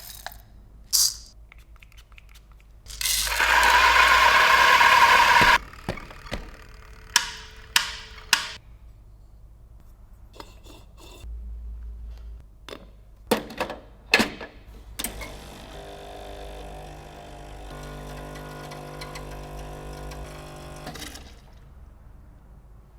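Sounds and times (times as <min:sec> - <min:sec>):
espresso machine humming: 0:03.1 - 0:08.6, 0:15.2 - 0:21.0
clicks and knocks of machine parts: 0:05.6 - 0:08.6.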